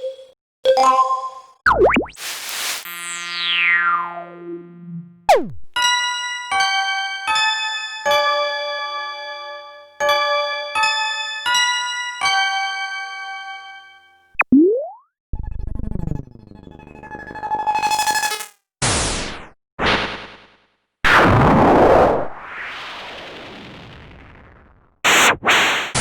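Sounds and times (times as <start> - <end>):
synthesized zip: 1.8 - 5.6, 16.0 - 18.6.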